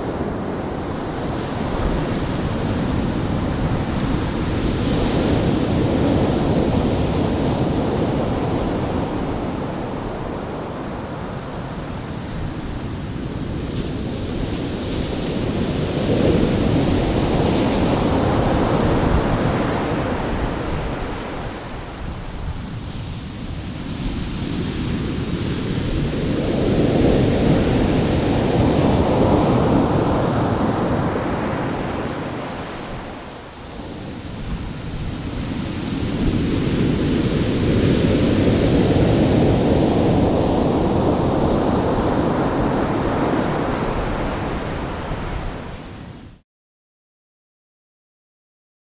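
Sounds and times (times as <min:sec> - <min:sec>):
ocean waves on shore: 0:00.0 - 0:46.4.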